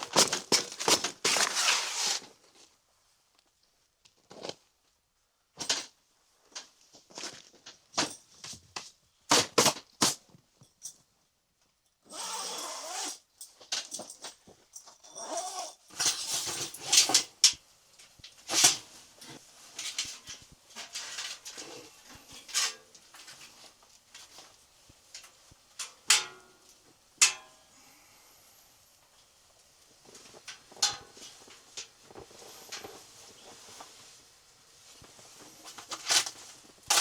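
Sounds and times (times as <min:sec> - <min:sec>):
rustling: 0:00.0 - 0:04.8, 0:29.3 - 0:37.0.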